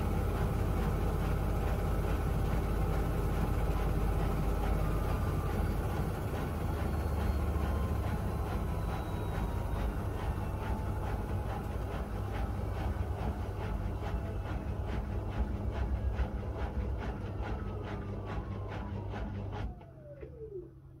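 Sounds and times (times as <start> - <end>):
washing machine motor hum: 0.0 - 21.0
motor whine falling in pitch: 17.8 - 21.0.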